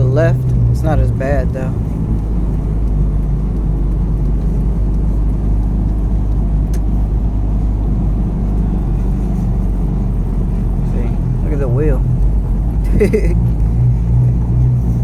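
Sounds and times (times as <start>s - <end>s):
car engine and road rumble: 0.0s - 15.0s.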